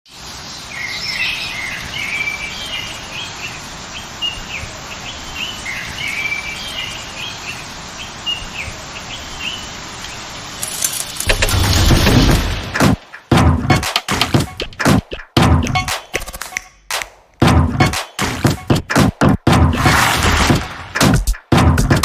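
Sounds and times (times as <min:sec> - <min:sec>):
outdoor background hiss: 0:00.1 - 0:13.3
songbird singing: 0:00.2 - 0:11.2.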